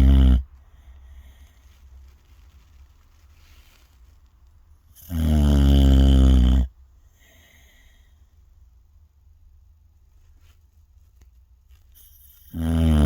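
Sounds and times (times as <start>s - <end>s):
loud low snore: 0.0s - 0.5s, 5.0s - 6.7s, 12.0s - 13.0s
faint breaths: 0.0s - 4.2s, 6.7s - 8.9s.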